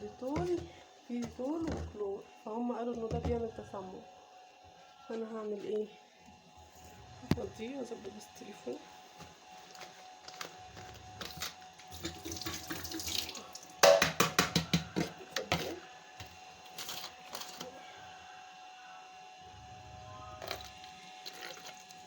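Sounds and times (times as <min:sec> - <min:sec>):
liquid pouring into sink: 0:11.9 - 0:14.4.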